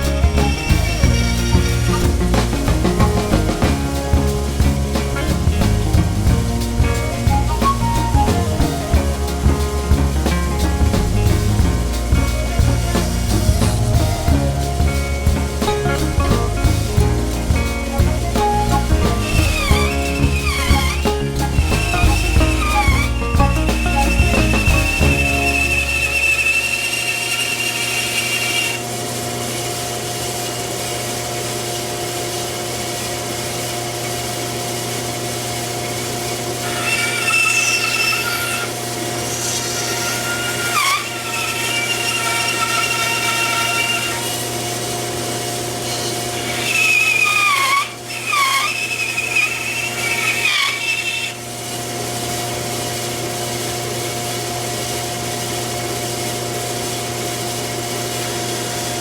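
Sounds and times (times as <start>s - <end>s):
axis motors whining: 0.0s - 28.8s
spindle motor humming: 0.0s - 29.5s, 34.8s - 59.0s.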